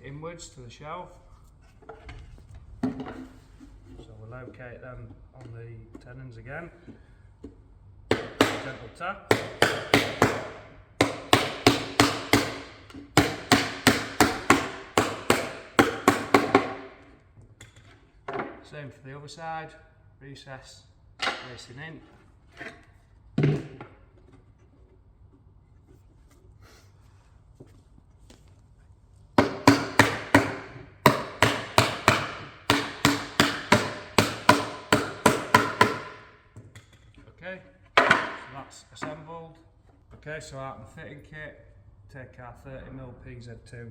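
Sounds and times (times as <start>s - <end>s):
rubber mallet knocking wood: 8.1s - 17.0s, 29.4s - 36.9s, 38.0s - 38.5s.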